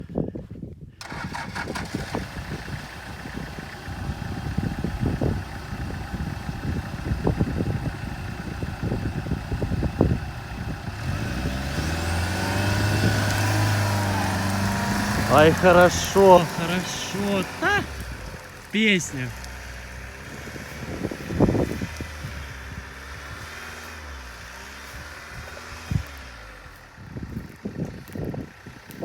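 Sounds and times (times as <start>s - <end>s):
off-road vehicle engine running: 1.0s - 29.0s.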